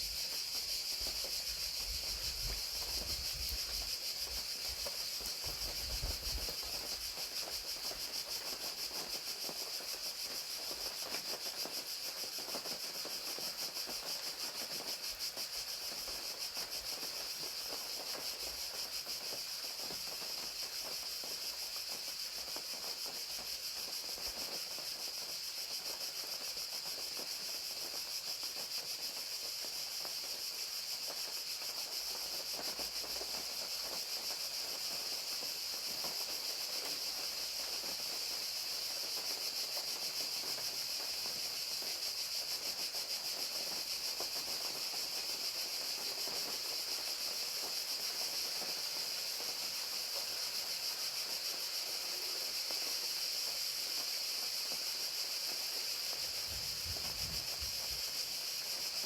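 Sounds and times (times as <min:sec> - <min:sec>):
crickets chirping: 0:00.0 - 0:59.0
rain pattering: 0:00.2 - 0:24.9, 0:26.3 - 0:59.0.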